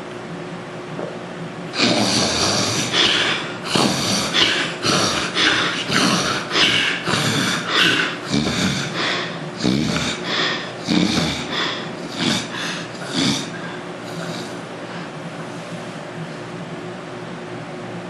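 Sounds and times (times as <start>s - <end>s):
steady background hum: 0.0s - 18.0s
man snoring loudly: 1.7s - 14.6s.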